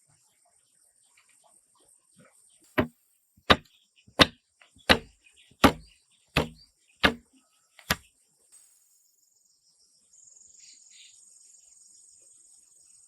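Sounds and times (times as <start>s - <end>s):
tool chopping wood: 3.5s - 7.2s, 7.8s - 8.0s.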